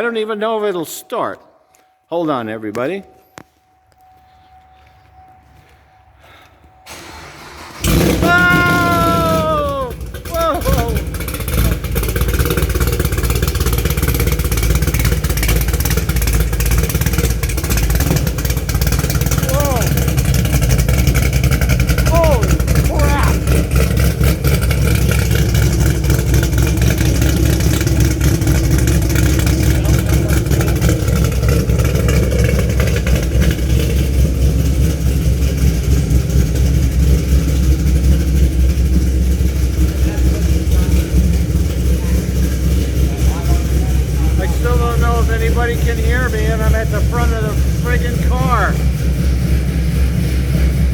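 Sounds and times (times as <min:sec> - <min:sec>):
car engine running loud: 0:06.9 - 0:50.9.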